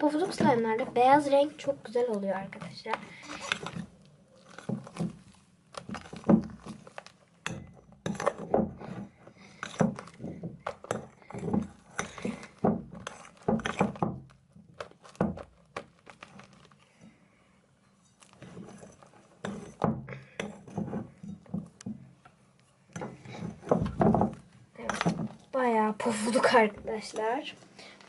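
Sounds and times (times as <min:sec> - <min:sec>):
spoon stirring slime: 0:00.0 - 0:25.6.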